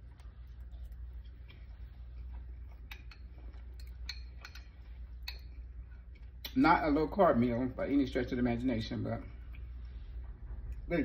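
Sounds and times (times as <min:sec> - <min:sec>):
utensil taps and chewing: 0:00.0 - 0:06.9, 0:09.2 - 0:10.9
low steady hum: 0:00.0 - 0:11.0.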